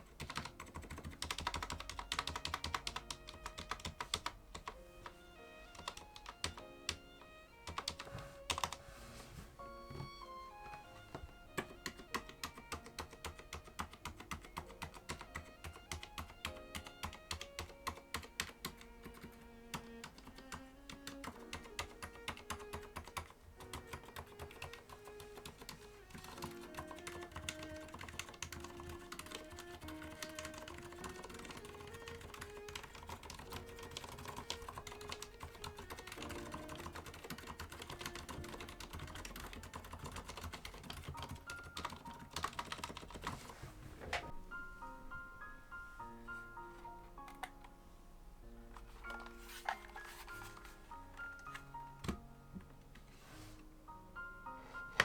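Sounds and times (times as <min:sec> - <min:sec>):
mechanical keyboard typing: 0:00.0 - 0:05.1, 0:05.7 - 0:07.0, 0:07.6 - 0:08.8, 0:11.2 - 0:43.6
soft background music: 0:00.0 - 0:55.0.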